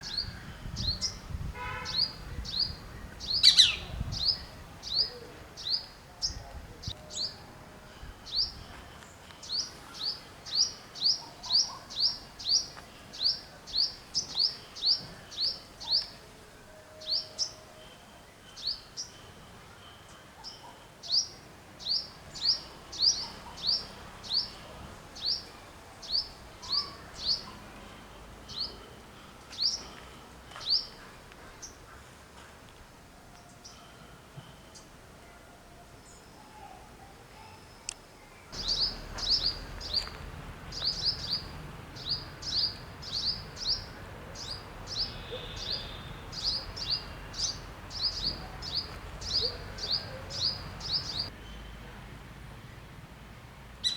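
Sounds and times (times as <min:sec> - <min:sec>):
bird chirping: 0:00.0 - 0:07.4, 0:20.4 - 0:29.9, 0:38.5 - 0:51.8.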